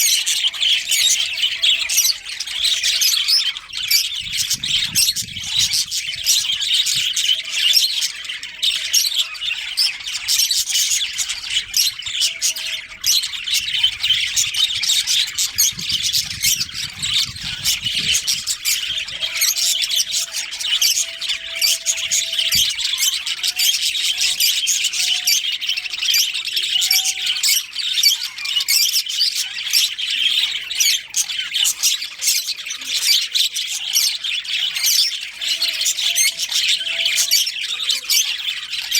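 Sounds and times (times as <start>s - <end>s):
budgerigars chattering and chirping: 0.0s - 38.9s.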